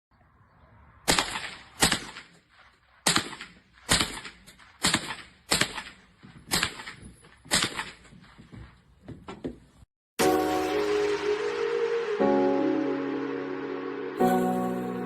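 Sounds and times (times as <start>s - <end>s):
rifle shots with echo: 1.1s - 8.0s.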